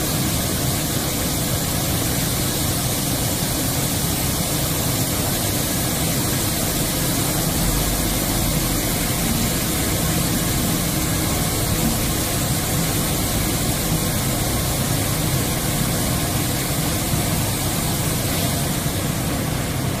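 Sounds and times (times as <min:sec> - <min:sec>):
car wash machine rushing: 0:00.0 - 0:20.0.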